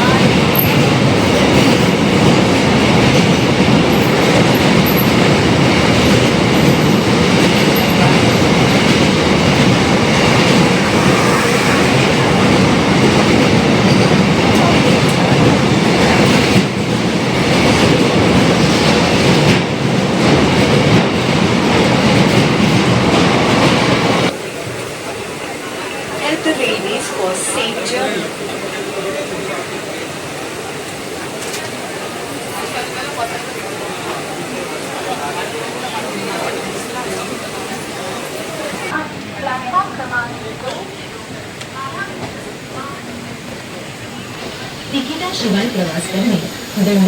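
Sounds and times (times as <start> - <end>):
train wheels rumbling on track: 0.0 - 47.0.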